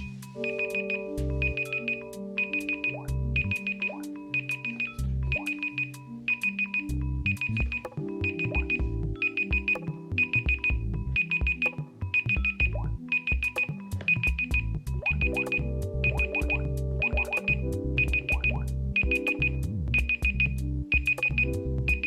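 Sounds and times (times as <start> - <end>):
electronic alarm melody: 0.0 - 22.0
high trilling bleep: 0.4 - 12.6, 13.2 - 20.4.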